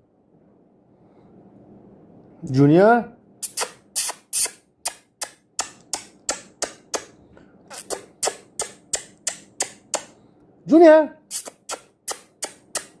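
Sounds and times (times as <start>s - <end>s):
person making clicking sounds: 3.4s - 10.2s, 11.3s - 13.0s.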